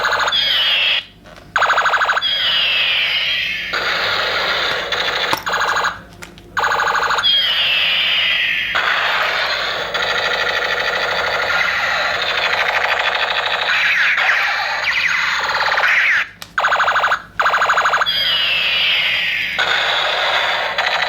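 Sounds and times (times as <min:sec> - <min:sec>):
pulsed electronic bursts: 0:00.0 - 0:06.0, 0:06.6 - 0:21.0
falling laser-like tone: 0:06.6 - 0:21.0
fast electronic rattling: 0:08.8 - 0:18.0.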